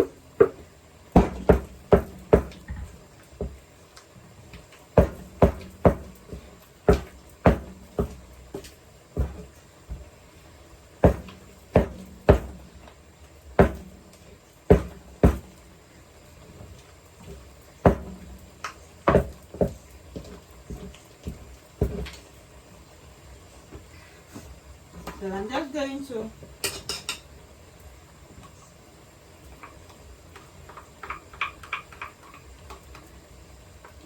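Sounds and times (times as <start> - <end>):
rolling pin pounding yam: 0.0 - 3.6, 4.9 - 10.2, 11.0 - 12.9, 13.5 - 15.6, 17.3 - 22.3.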